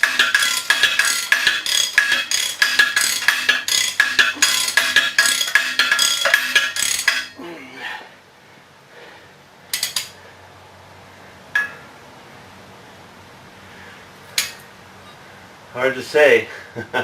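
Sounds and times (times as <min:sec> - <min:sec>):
metal parts clinking: 0:00.0 - 0:07.4, 0:09.8 - 0:10.2.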